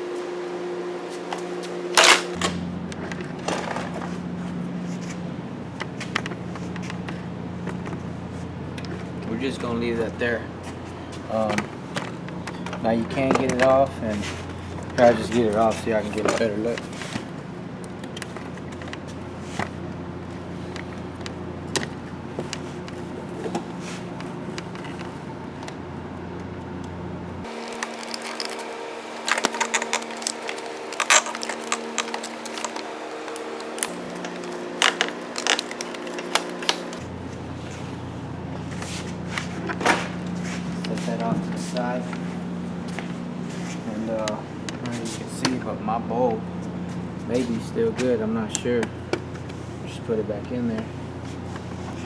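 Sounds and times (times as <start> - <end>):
steady low hum: 0.0 - 3.2
background hum: 0.0 - 52.0
plastic trim scraping: 1.0 - 2.4, 27.5 - 37.0
plastic clips clicking and snapping: 1.3 - 2.4, 27.5 - 37.0.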